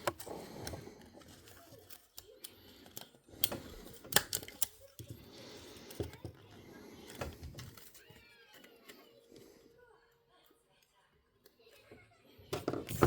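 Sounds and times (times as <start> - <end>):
small tools and parts clicking: 0.0 - 5.1.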